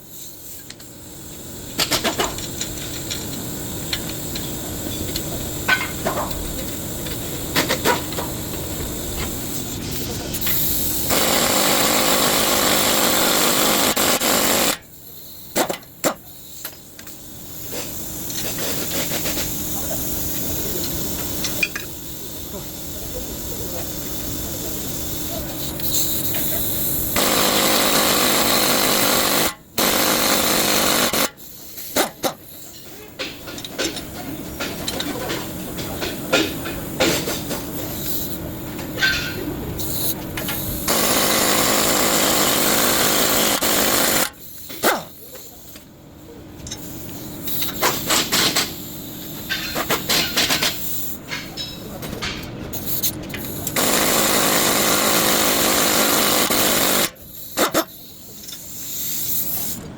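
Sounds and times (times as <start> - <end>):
power tool running: 10.9 - 14.8, 27.1 - 31.4, 40.8 - 44.4, 53.8 - 57.2.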